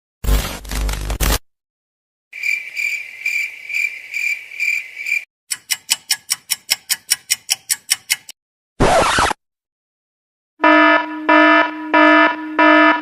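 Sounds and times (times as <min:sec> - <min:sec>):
high pulsing cricket chirp: 0:02.4 - 0:05.2
rapid sharp ticks: 0:05.5 - 0:08.3.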